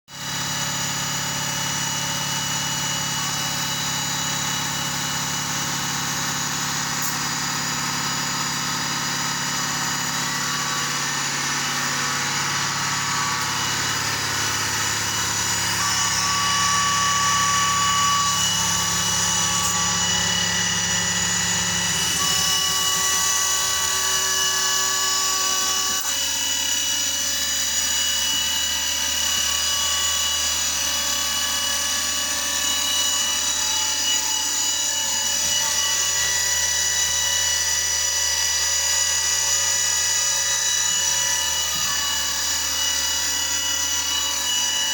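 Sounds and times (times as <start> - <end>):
machine tool cutting plastic: 9.0 - 44.9.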